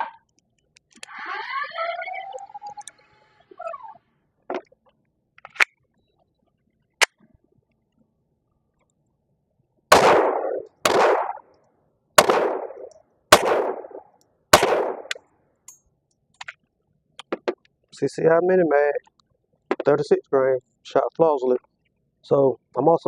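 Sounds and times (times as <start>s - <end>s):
pistol shots with echo: 9.9s - 11.4s, 12.2s - 15.2s.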